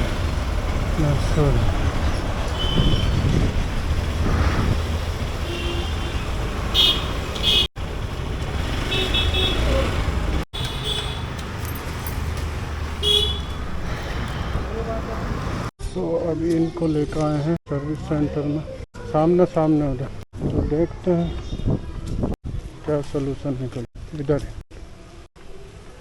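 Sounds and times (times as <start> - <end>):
road traffic engines: 0.0 - 15.7
vehicle horn toots: 2.6 - 3.3, 5.4 - 7.7, 8.8 - 10.0, 10.6 - 11.4, 13.0 - 13.7.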